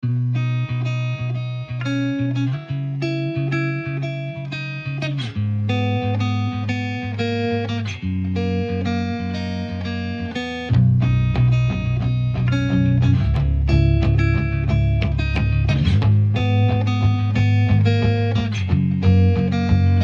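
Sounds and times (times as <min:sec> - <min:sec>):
plucked guitar music: 0:00.0 - 0:20.0
sustained bass line: 0:10.7 - 0:20.0.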